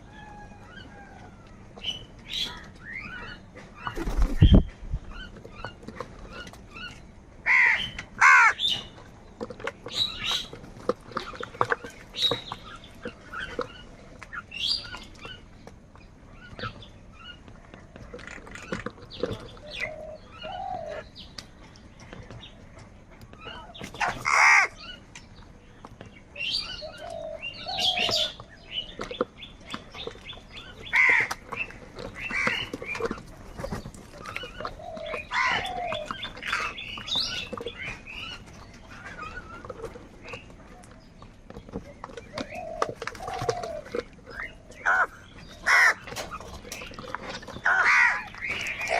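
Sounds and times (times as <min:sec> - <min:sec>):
crows cawing: 0:07.4 - 0:08.6, 0:24.0 - 0:24.8, 0:30.9 - 0:31.4, 0:44.8 - 0:46.1, 0:47.6 - 0:48.9.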